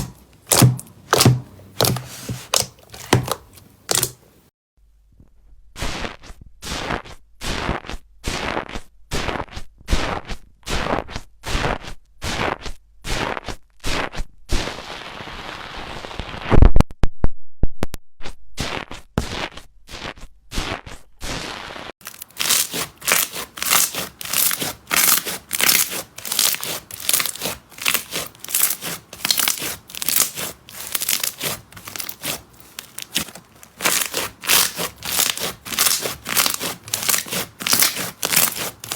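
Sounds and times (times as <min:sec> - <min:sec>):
loud sharp slime pop: 0:00.0 - 0:04.2
slime crackling squishes: 0:00.0 - 0:04.3, 0:22.0 - 0:38.9.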